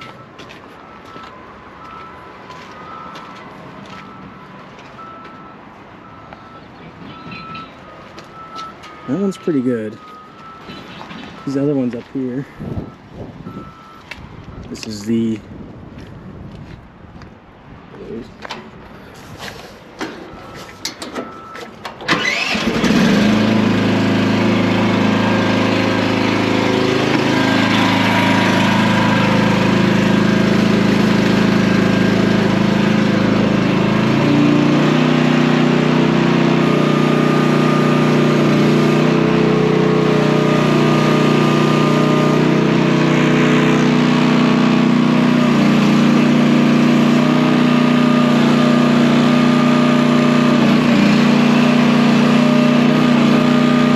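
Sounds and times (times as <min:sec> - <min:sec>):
engine clicks: 0:20.0 - 0:23.0
small engine running: 0:22.1 - 0:53.9.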